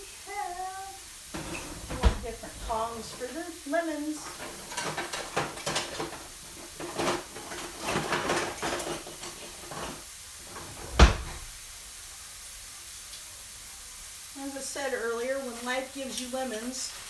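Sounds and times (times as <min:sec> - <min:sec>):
kitchen items clattering: 0:01.2 - 0:11.6
kitchen cabinet banging shut: 0:01.3 - 0:03.4, 0:04.2 - 0:11.6.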